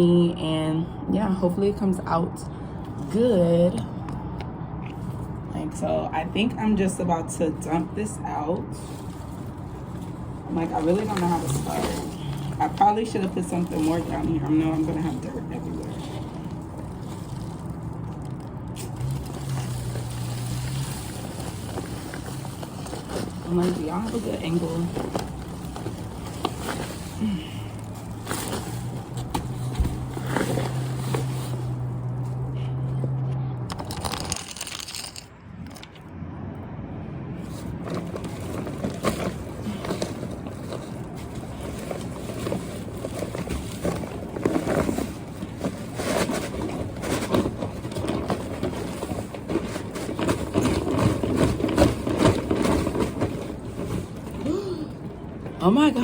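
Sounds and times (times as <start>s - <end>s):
soil scraping and crumbling: 7.6s - 36.0s, 37.4s - 56.0s
hands digging through dirt: 8.8s - 32.8s.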